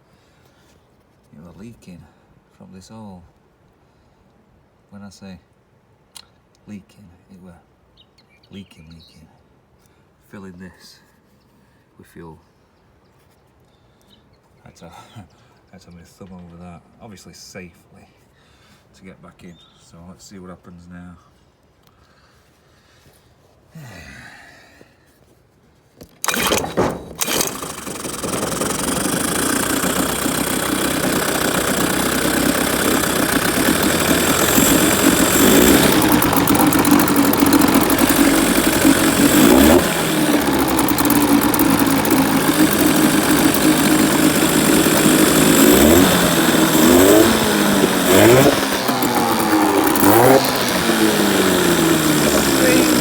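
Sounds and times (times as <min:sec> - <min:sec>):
outboard motor pull-start: 0:26.1 - 0:53.0
outboard motor running and revving: 0:26.2 - 0:53.0.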